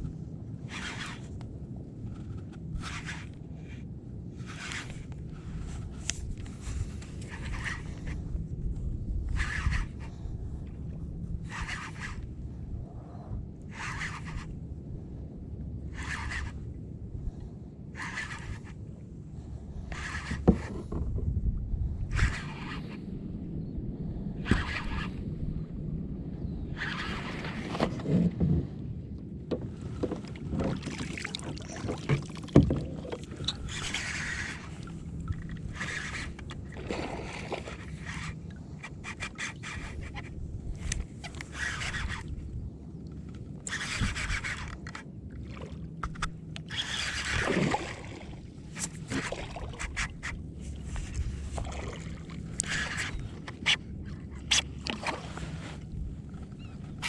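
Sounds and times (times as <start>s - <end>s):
scraping along kayak hull: 0.6s - 1.4s, 2.0s - 12.4s, 13.7s - 14.5s, 15.9s - 16.7s, 18.0s - 18.8s, 19.4s - 21.4s, 22.1s - 23.1s, 24.5s - 25.3s, 26.7s - 28.8s, 29.5s - 57.0s
water swishing: 29.8s - 42.6s, 43.5s - 57.0s.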